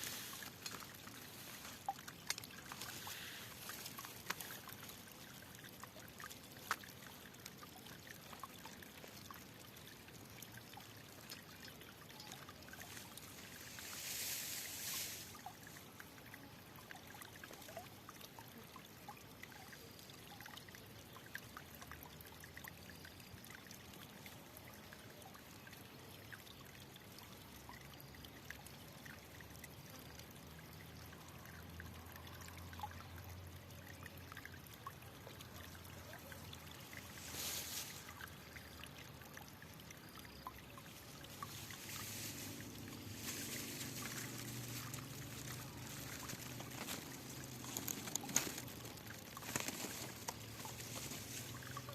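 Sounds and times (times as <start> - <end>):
water rushing: 0.0 - 9.2, 11.2 - 16.0, 40.5 - 51.9
water trickling: 0.0 - 51.9.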